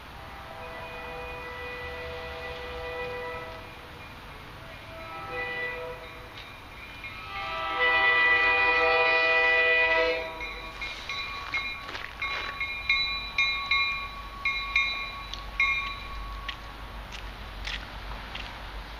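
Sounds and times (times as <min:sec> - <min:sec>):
high squeal of train: 0:00.0 - 0:17.4
train air horn: 0:00.1 - 0:03.8, 0:04.6 - 0:06.3, 0:07.2 - 0:10.4.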